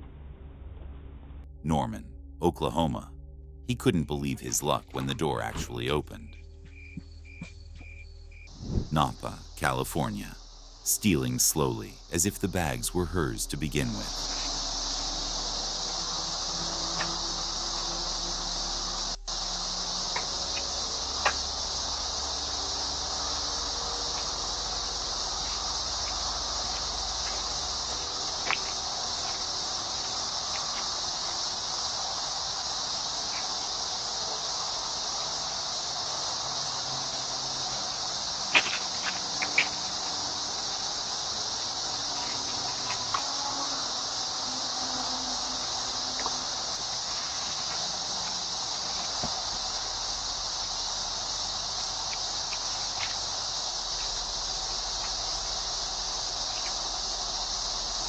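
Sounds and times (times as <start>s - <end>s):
high-pitched microphone hiss: 1.8s - 58.0s.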